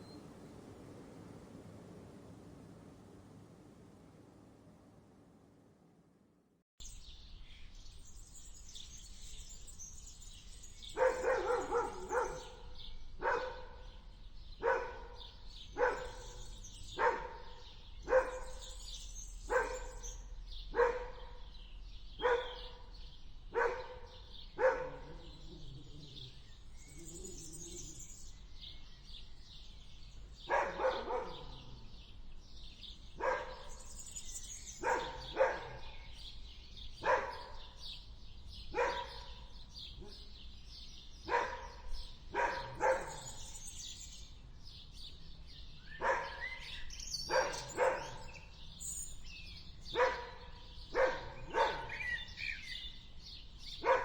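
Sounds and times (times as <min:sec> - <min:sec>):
birds chirping: 0:06.8 - 0:54.0
dog barking: 0:11.0 - 0:14.0, 0:14.6 - 0:18.8, 0:19.5 - 0:21.5, 0:22.2 - 0:22.9, 0:23.5 - 0:26.4, 0:30.4 - 0:32.0, 0:33.2 - 0:33.9, 0:34.7 - 0:36.2, 0:37.0 - 0:37.8, 0:38.7 - 0:40.3, 0:41.2 - 0:43.6, 0:45.8 - 0:48.6, 0:49.8 - 0:52.8, 0:53.8 - 0:54.0.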